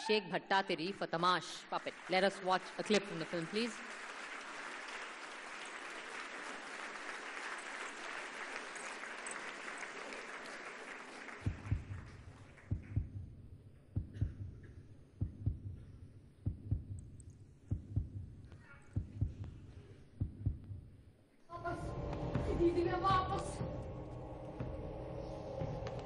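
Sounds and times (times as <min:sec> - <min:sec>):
heartbeat thumps: 0:11.4 - 0:21.0, 0:21.8 - 0:26.0.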